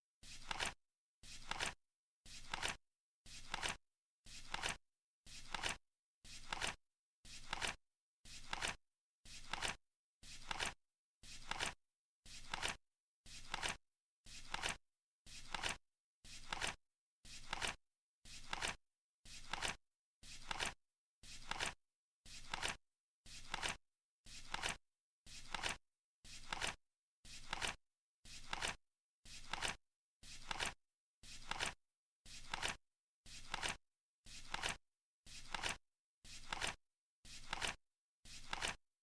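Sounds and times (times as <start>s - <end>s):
flip clock card flipping: 0.4s - 0.7s, 2.4s - 2.8s, 3.4s - 3.8s, 4.5s - 4.8s, 6.4s - 6.8s, 26.4s - 26.8s, 30.4s - 30.8s, 32.4s - 32.8s, 33.4s - 33.8s, 35.5s - 35.8s, 36.4s - 36.8s, 37.4s - 37.8s, 38.4s - 38.8s.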